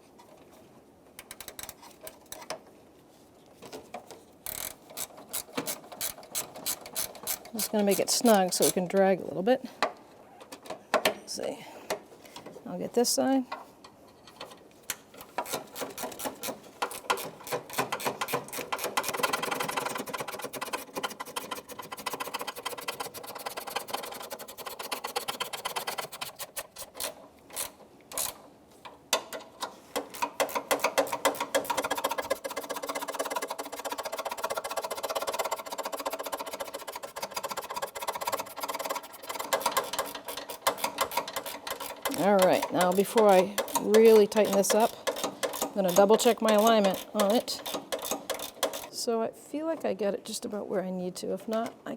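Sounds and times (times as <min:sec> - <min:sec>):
ratchet wrench clicking: 0:04.5 - 0:08.8, 0:30.0 - 0:48.9.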